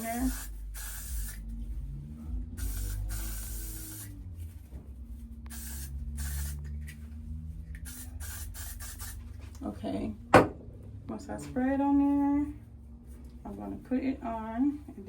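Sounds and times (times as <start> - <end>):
aerosol spray hissing: 0.0 - 1.4, 2.6 - 4.2, 5.5 - 7.0, 7.8 - 9.2.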